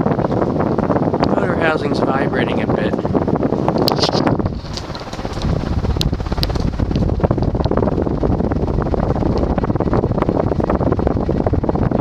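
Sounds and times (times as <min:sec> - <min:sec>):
ceiling fan air rushing: 0:00.0 - 0:12.0
fan housing vibrating: 0:00.0 - 0:12.0.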